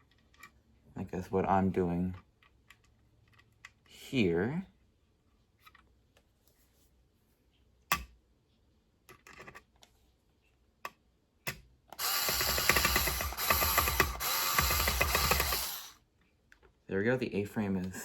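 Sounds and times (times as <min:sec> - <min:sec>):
screw gun driving a screw: 0:11.9 - 0:16.0.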